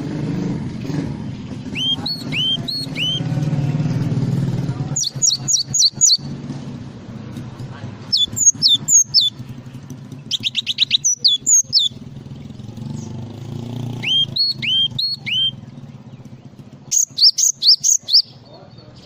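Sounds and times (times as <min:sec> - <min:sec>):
bird singing whistled notes: 0:01.6 - 0:03.4, 0:04.9 - 0:06.3, 0:08.1 - 0:09.4, 0:10.2 - 0:19.0.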